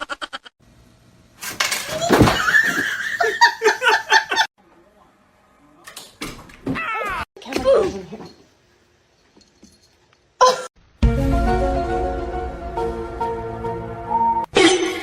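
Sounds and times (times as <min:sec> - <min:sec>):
people laughing: 0:02.4 - 0:04.5
people talking: 0:07.4 - 0:08.4.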